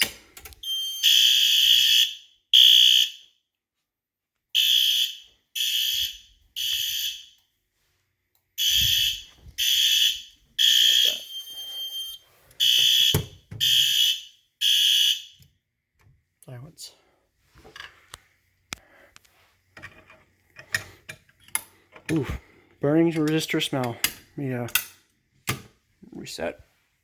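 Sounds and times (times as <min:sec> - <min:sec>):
fire alarm horn blasts: 0:00.6 - 0:03.4, 0:04.6 - 0:07.5, 0:08.6 - 0:15.4.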